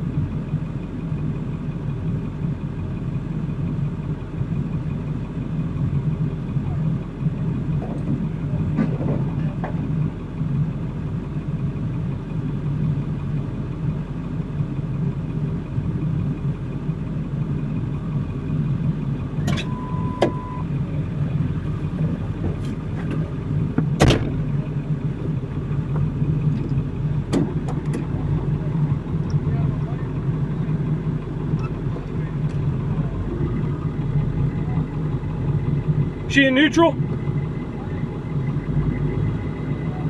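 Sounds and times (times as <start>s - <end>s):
vehicle engine idling: 0.0s - 40.0s
short beep: 19.4s - 20.7s.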